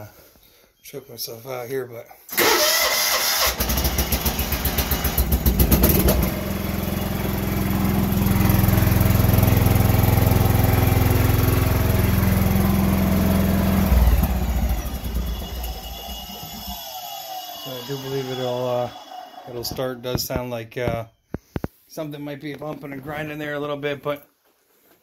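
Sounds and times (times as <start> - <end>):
engine cranking on starter: 2.3 - 19.8
tractor engine running: 2.4 - 18.9.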